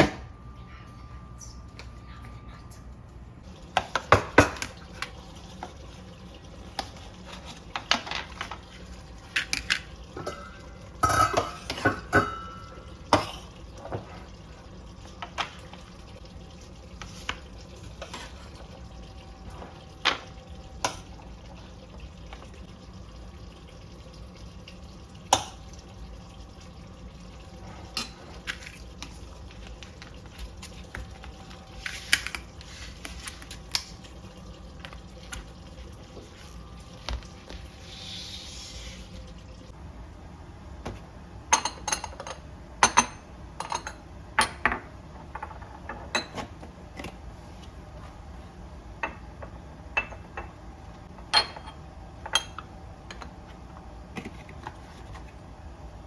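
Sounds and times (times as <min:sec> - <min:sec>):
dishes and metal utensils clinking: 0:09.5 - 0:13.4.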